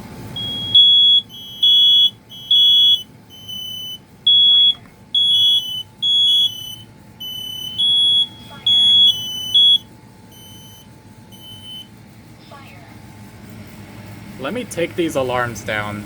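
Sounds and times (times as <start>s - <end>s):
smoke alarms beeping: 0.2s - 12.0s.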